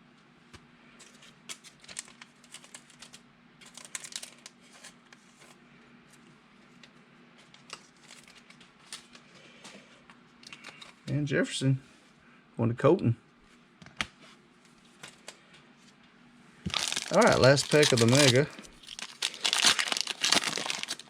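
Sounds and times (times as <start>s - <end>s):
trading cards rustling and clicking: 1.0s - 5.6s, 16.7s - 21.0s.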